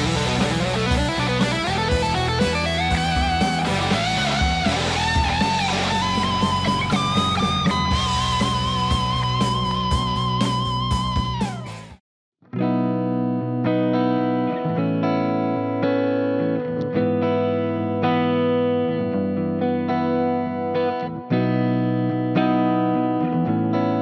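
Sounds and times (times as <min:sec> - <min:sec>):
backing track with drums and bass: 0:00.0 - 0:12.0
electric guitar lead line: 0:00.0 - 0:24.0.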